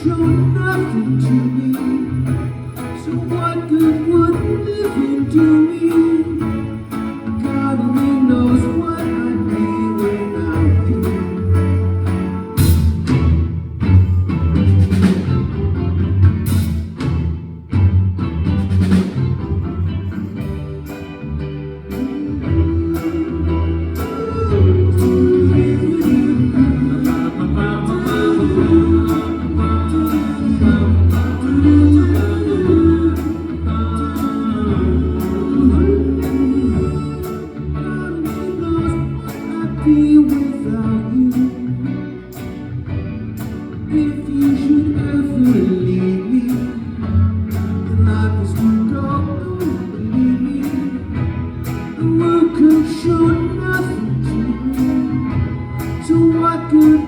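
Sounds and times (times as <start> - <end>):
bass and guitar: 0.0 - 57.0
wordless harmony vocals: 22.0 - 41.8.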